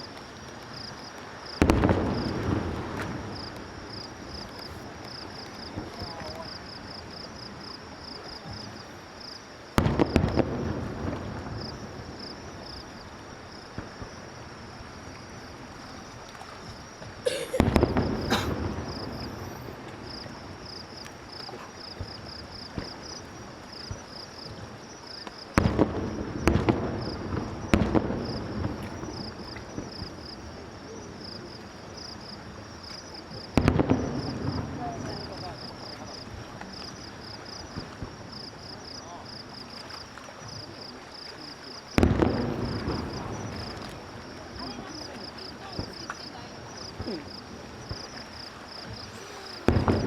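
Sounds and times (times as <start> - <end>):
insects chirping: 0.0 - 50.0
fireworks booming: 0.7 - 7.2, 9.7 - 14.9, 17.0 - 23.3, 25.4 - 31.5, 33.3 - 39.3, 41.9 - 50.0
smaller fireworks bangs: 0.7 - 7.6, 9.7 - 16.0, 17.0 - 31.5, 33.2 - 39.0, 41.9 - 50.0.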